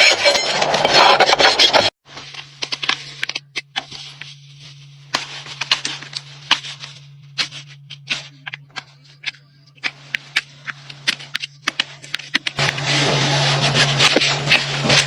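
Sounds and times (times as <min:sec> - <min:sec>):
tools scraping a hoof: 0:00.0 - 0:02.0
steady low hum: 0:02.1 - 0:15.0.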